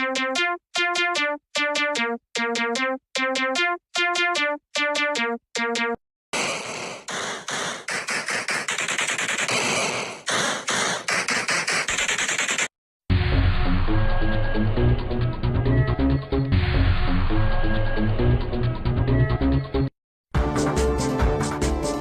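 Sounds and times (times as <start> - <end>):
harsh chopped static noise: 6.4 - 12.7.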